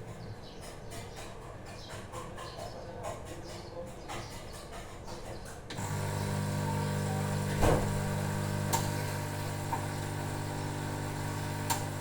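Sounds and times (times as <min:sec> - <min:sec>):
espresso machine pump humming: 0:05.7 - 0:12.0
sharp clicks: 0:09.6 - 0:12.0.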